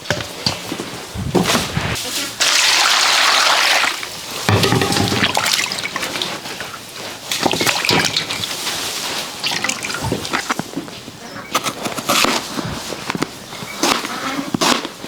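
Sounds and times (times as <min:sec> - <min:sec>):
water trickling and splashing: 0:02.3 - 0:11.0
knocks and clatter: 0:04.5 - 0:06.6.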